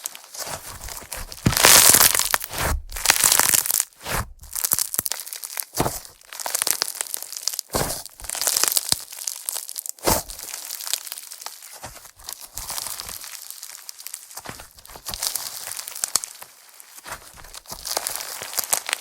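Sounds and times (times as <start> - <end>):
slime crackling and crinkling: 0.0 - 19.0
slime pops and squishes: 1.2 - 13.3.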